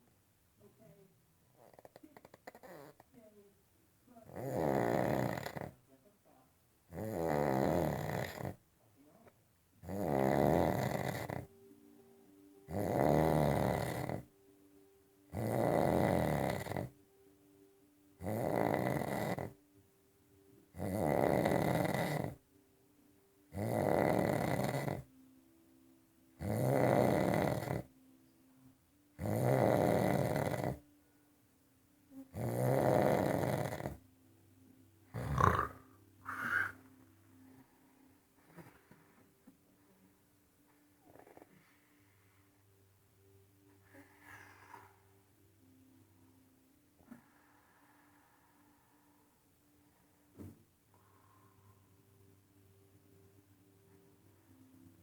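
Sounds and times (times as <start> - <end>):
man snoring: 4.3 - 5.8, 6.9 - 8.6, 9.8 - 11.5, 12.7 - 14.3, 15.3 - 16.9, 18.2 - 19.6, 20.8 - 22.4, 23.6 - 25.1, 26.4 - 27.9, 29.2 - 30.8, 32.3 - 34.0, 35.1 - 36.8
faint steady hum: 5.4 - 55.0
man snorting: 35.2 - 36.8.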